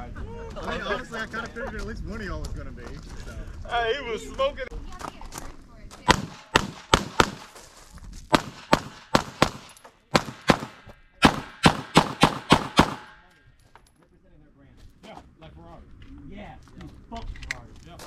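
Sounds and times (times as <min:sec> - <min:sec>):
rifle shots: 0:06.1 - 0:07.6, 0:08.3 - 0:13.3.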